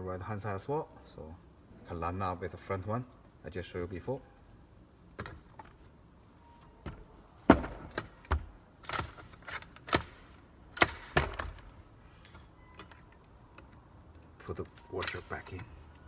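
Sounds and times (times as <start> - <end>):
sharp knocks and clicks of parts: 5.1 - 5.9, 6.6 - 16.0.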